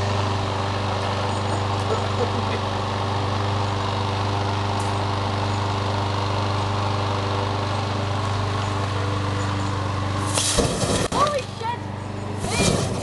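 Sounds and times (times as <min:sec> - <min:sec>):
steady low hum: 0:07.7 - 0:13.0.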